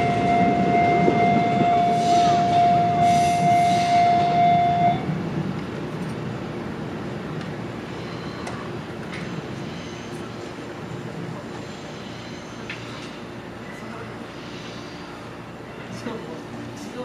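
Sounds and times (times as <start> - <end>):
level crossing alarm tone: 0.0 - 5.1
passing train rumble: 0.0 - 17.0.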